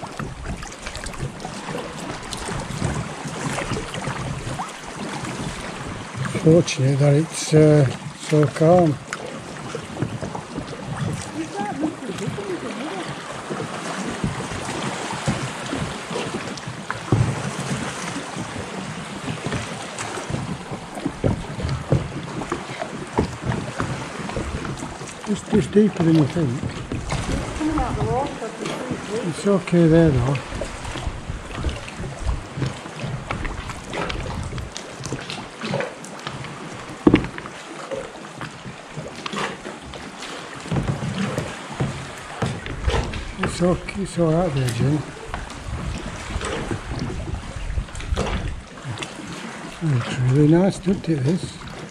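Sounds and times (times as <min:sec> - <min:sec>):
paddle knocks: 0:00.0 - 0:51.9
water splashing around kayak: 0:00.0 - 0:51.9
wind on microphone: 0:09.6 - 0:29.3, 0:30.0 - 0:35.8, 0:40.7 - 0:49.1.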